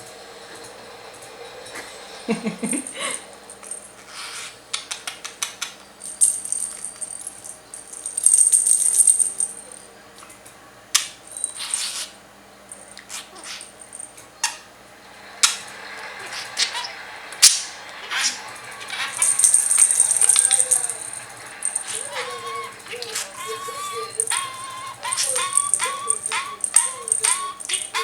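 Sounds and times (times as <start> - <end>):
high jingle: 2.3 - 3.9, 6.0 - 9.9, 18.5 - 28.0
bird toy rattling and clicking: 3.6 - 9.8, 15.4 - 28.0.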